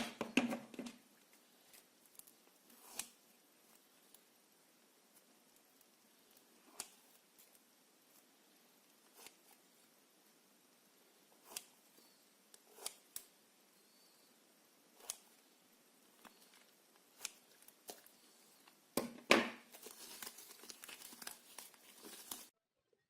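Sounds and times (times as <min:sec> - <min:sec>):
slime crinkly crackling: 0:19.7 - 0:22.5.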